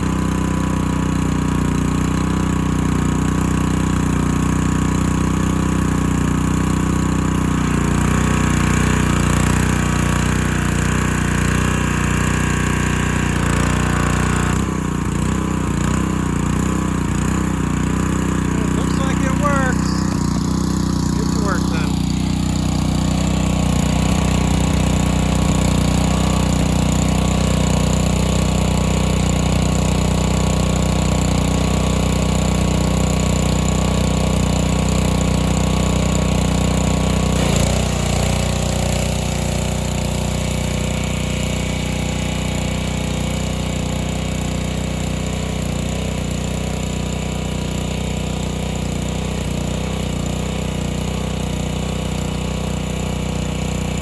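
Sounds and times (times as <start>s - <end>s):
pressure washer engine running: 0.0s - 54.0s.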